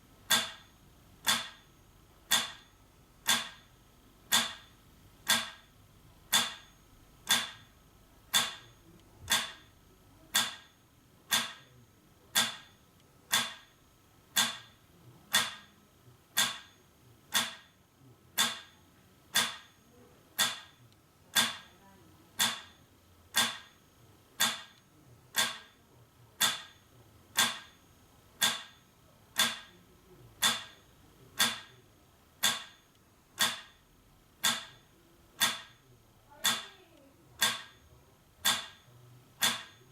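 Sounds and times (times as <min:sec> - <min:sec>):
metronome ticking: 0:00.3 - 0:01.6, 0:02.2 - 0:03.7, 0:04.3 - 0:05.7, 0:06.3 - 0:07.7, 0:08.3 - 0:09.7, 0:26.4 - 0:26.8, 0:27.4 - 0:27.8, 0:28.4 - 0:28.8, 0:29.4 - 0:29.8, 0:30.4 - 0:30.8, 0:31.4 - 0:31.7, 0:32.4 - 0:33.8, 0:34.4 - 0:37.8, 0:38.4 - 0:39.9.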